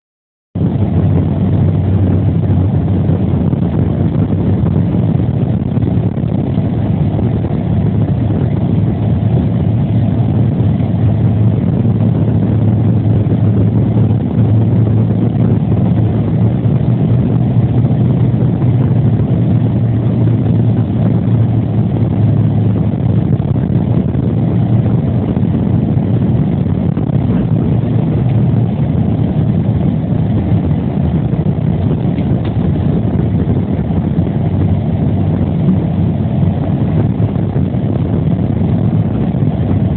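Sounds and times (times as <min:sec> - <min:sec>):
car engine and road noise: 0:00.6 - 0:39.9
constant low hum: 0:00.6 - 0:39.9.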